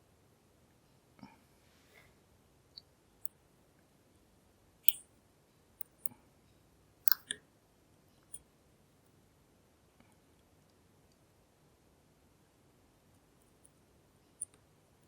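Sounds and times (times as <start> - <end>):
lock pick metallic clicks: 7.1 - 7.4.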